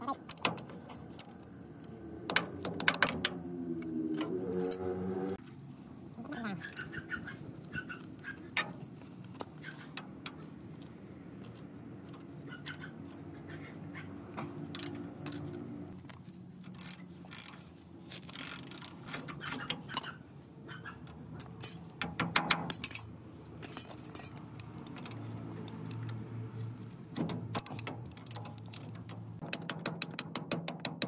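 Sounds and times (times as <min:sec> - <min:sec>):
metal parts and tools clinking: 0:00.0 - 0:05.4, 0:06.5 - 0:10.8, 0:14.3 - 0:20.3, 0:21.0 - 0:26.4, 0:27.1 - 0:29.4.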